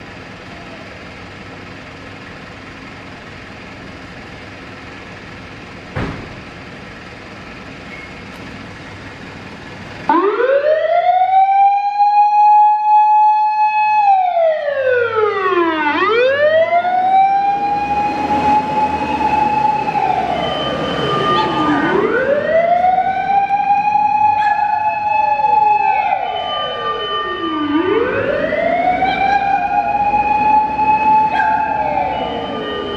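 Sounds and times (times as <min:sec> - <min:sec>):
engine rumble: 0:00.0 - 0:11.5, 0:13.8 - 0:32.9
thump: 0:05.9 - 0:06.4
fire engine siren wailing: 0:10.0 - 0:32.9.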